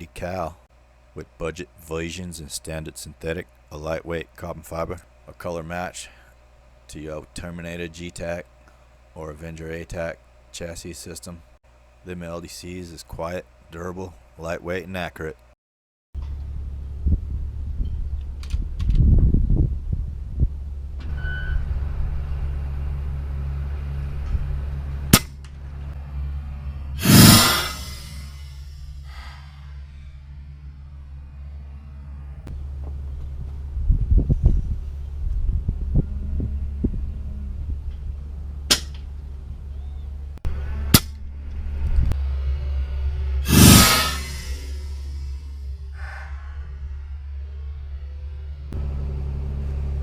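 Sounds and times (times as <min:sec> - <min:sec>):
steady low hum: 0:00.0 - 0:15.6, 0:16.2 - 0:50.0
steady low rumble: 0:16.2 - 0:50.0
air rifle shot: 0:27.0 - 0:28.4, 0:43.5 - 0:44.6.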